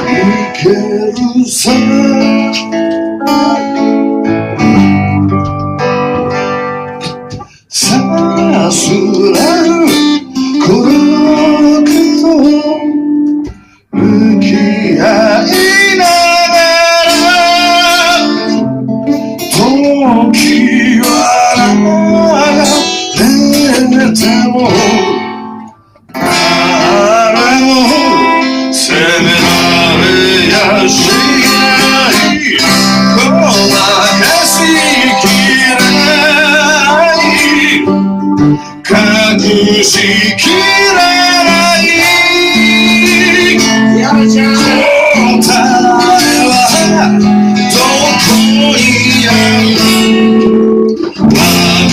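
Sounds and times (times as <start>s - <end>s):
guitar: 0.0s - 51.9s
person singing: 0.0s - 51.9s.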